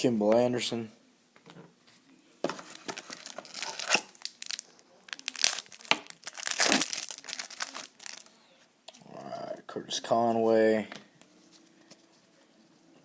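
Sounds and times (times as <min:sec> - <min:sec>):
trading cards crinkling: 0:02.6 - 0:08.4.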